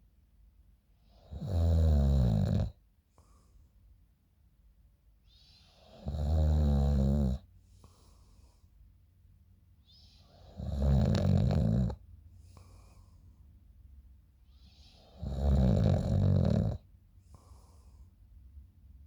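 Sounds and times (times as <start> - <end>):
soft breathing: 3.1 - 3.8, 7.6 - 8.8, 12.3 - 13.6, 17.2 - 18.4
person snoring loudly: 10.6 - 11.9, 15.2 - 16.8.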